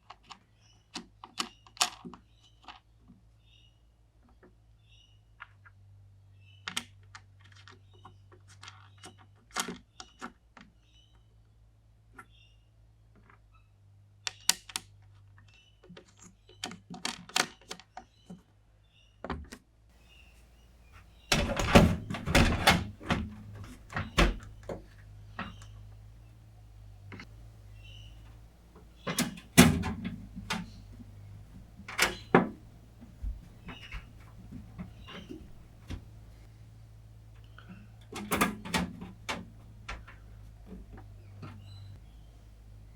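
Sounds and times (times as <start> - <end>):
low steady hum: 20.0 - 42.9
computer parts clicking and knocking: 20.9 - 26.1, 26.8 - 36.6, 37.5 - 42.9.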